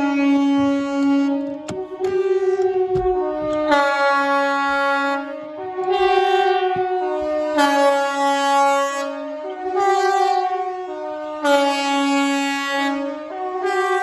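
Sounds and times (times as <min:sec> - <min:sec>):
compressed-air siren chord: 0:00.0 - 0:10.8.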